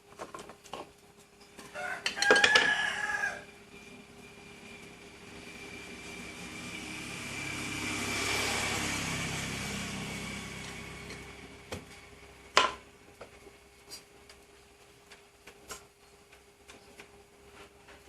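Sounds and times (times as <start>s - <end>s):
vehicle passing by: 4.4s - 12.6s.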